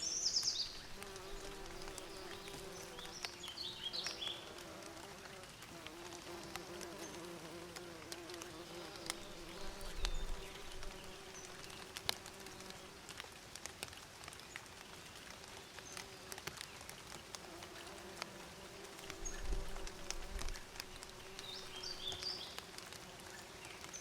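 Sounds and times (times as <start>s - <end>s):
faint ticks: 0.4s - 24.0s
bees buzzing: 0.8s - 3.4s, 17.5s - 23.0s.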